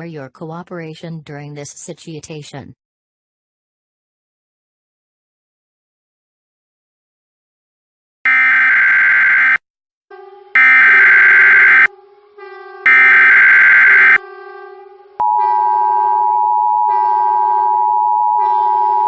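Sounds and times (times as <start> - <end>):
screeching digital data tones: 8.3 - 9.6, 10.6 - 11.9, 12.9 - 14.2
faint low drone: 10.1 - 16.8
two-tone alert signal: 10.6 - 11.9, 12.8 - 14.2, 15.2 - 19.0.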